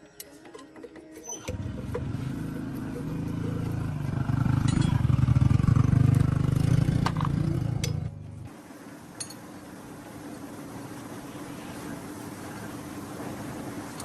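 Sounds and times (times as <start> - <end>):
engine running with low beat: 1.4 - 8.6.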